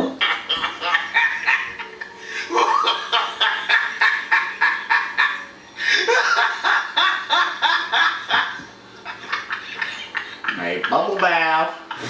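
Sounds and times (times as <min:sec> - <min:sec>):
person laughing hard: 0:00.0 - 0:10.6.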